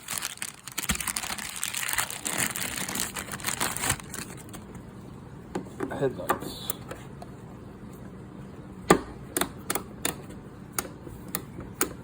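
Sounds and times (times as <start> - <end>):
hands crinkling material: 0.0 - 4.7.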